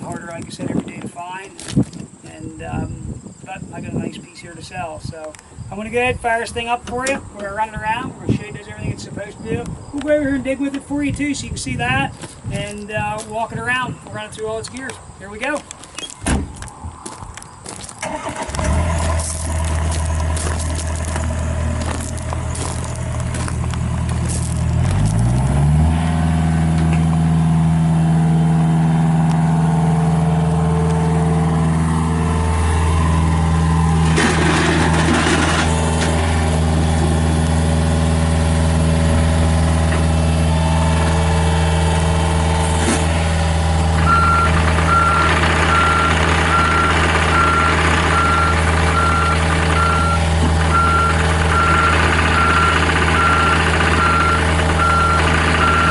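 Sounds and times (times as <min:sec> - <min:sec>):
excavator diesel engine running: 0:18.0 - 0:55.9
travel alarm beeping: 0:44.0 - 0:55.9.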